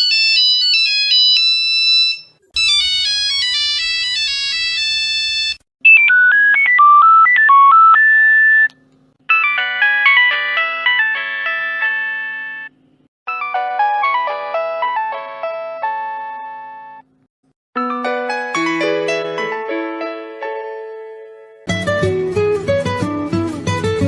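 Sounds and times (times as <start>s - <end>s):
mobile phone ringtones: 0.1s - 8.7s, 9.3s - 12.7s.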